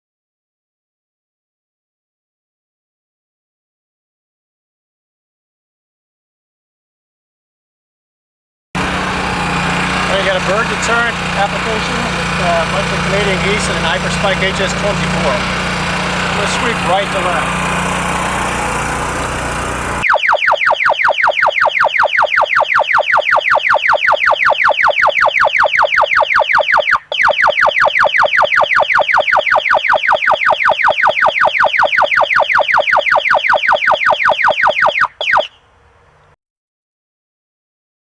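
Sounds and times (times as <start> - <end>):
pulsing electronic tone: 20.0 - 35.5.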